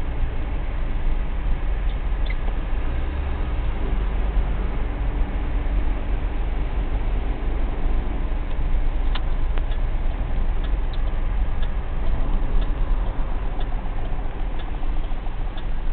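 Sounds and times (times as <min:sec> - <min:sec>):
wind buffeting microphone: 0:00.0 - 0:15.9
faint ticks: 0:08.4 - 0:15.9.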